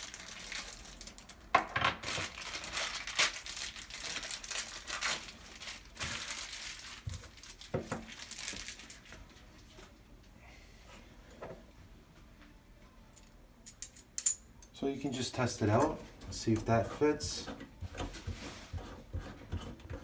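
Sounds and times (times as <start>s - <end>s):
plastic packaging crinkling: 0.0s - 9.4s.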